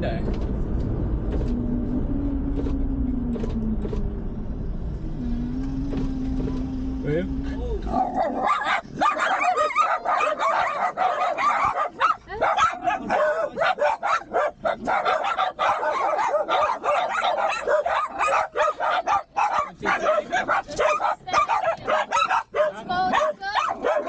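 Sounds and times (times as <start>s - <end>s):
dogs barking and yipping: 7.9s - 24.0s.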